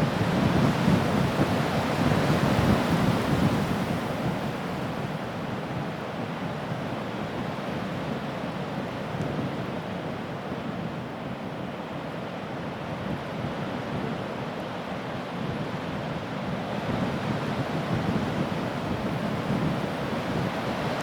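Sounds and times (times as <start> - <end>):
wind buffeting microphone: 16.8 - 21.0.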